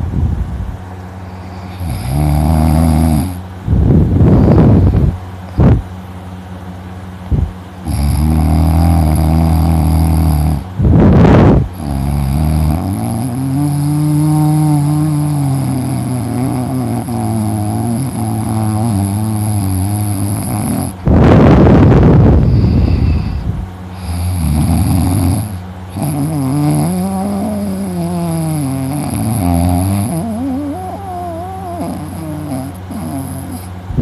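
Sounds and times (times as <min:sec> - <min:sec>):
man snoring loudly: 0:01.6 - 0:03.4, 0:07.8 - 0:10.7, 0:11.7 - 0:21.0, 0:22.5 - 0:33.7.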